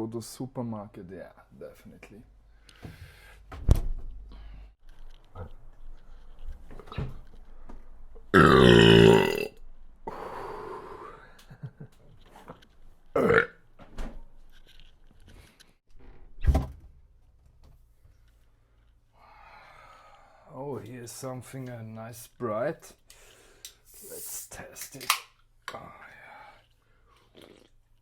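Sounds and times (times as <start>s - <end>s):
man burping: 8.4s - 11.0s, 13.2s - 13.6s.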